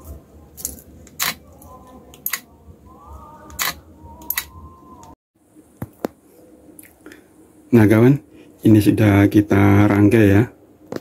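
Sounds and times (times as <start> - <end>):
electronic parts clicking and knocking: 0.6 - 1.4.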